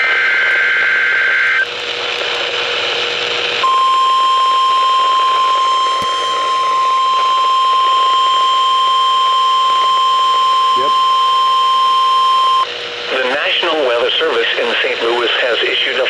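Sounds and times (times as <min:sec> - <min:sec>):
radio static hiss: 0:00.0 - 0:16.0
screeching data burst: 0:03.6 - 0:12.6
steady warning alarm tone: 0:03.6 - 0:12.7.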